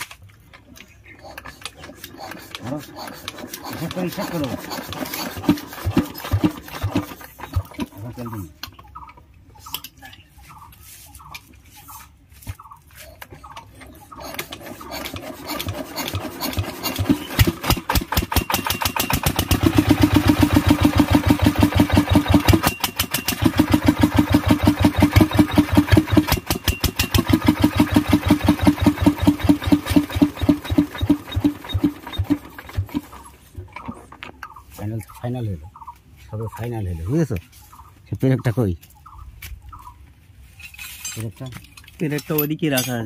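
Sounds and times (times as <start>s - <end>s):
diesel engine chugging: 14.1s - 34.6s.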